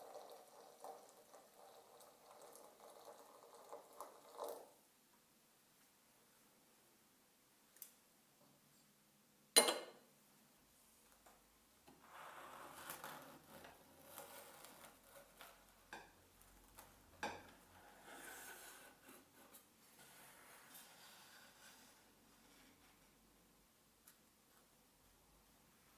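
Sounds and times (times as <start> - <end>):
soft rubbing and rustling: 12.0 - 15.8.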